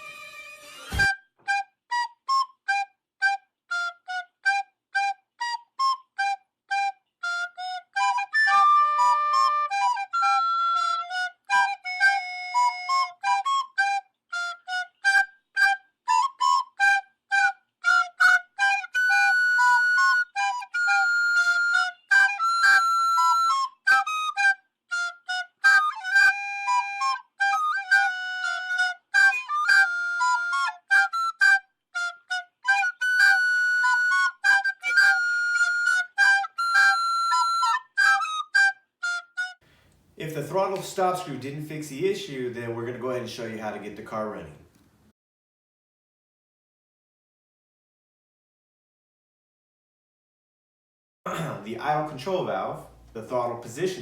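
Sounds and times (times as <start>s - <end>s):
flute-like melody: 0.0s - 39.6s.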